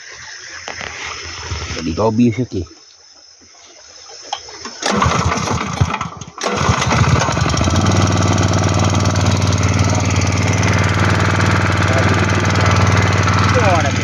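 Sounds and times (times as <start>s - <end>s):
small engine starting and running: 4.6s - 14.0s.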